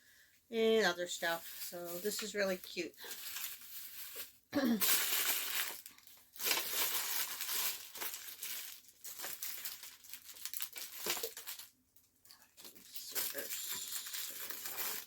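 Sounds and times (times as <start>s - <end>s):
packaging crinkling: 1.2s - 11.8s, 12.4s - 15.0s.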